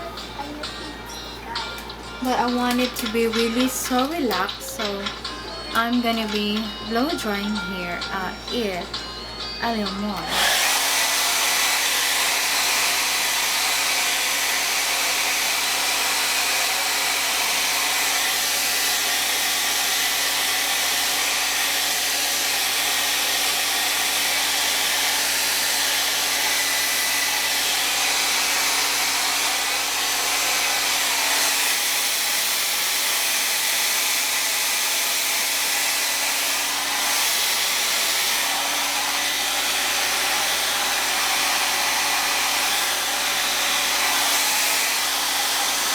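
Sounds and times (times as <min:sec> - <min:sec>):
hair dryer blowing air: 0:02.2 - 0:45.9.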